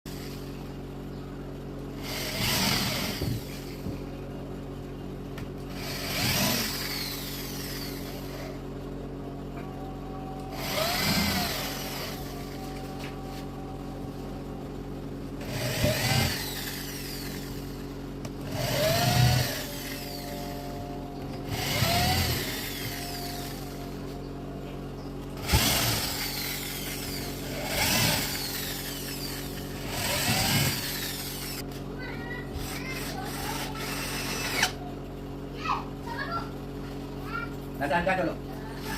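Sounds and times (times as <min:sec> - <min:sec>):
steady low hum: 0:00.1 - 0:38.9
power drill driving screws: 0:02.0 - 0:03.7, 0:05.7 - 0:08.4, 0:10.6 - 0:12.6, 0:15.4 - 0:17.8, 0:18.4 - 0:20.5, 0:21.4 - 0:23.7, 0:25.4 - 0:31.6, 0:32.6 - 0:34.8.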